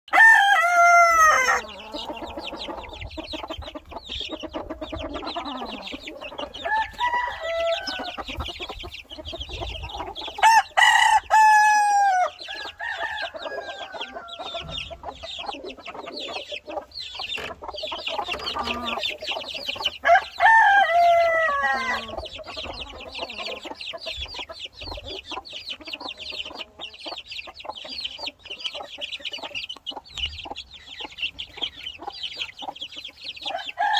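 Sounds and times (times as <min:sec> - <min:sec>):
rooster crowing: 0:00.1 - 0:01.9, 0:06.6 - 0:08.2, 0:10.4 - 0:14.8, 0:20.0 - 0:22.2, 0:33.5 - 0:33.9
chicks peeping: 0:00.1 - 0:33.9
hen clucking: 0:00.1 - 0:33.9.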